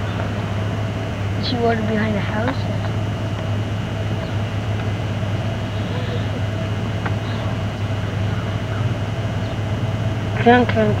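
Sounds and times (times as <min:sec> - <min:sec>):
steady low hum: 0:00.0 - 0:11.0
faint voice: 0:05.8 - 0:07.6.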